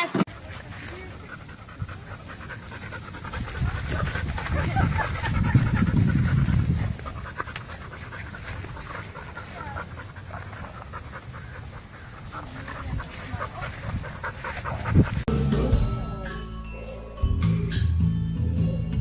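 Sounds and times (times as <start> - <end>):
dog panting: 0.3 - 15.3.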